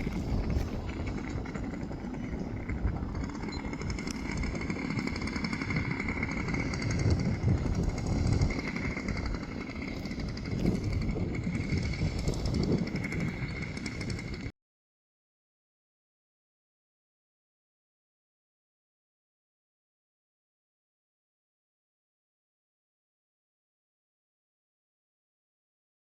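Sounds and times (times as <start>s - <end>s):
model plane engine running: 0.0s - 14.5s.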